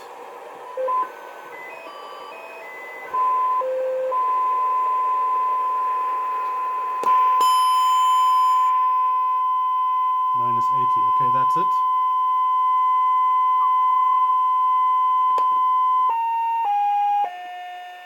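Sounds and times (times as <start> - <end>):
radio beat-note tones: 0.0 - 12.0
steady radio tone: 10.2 - 12.0.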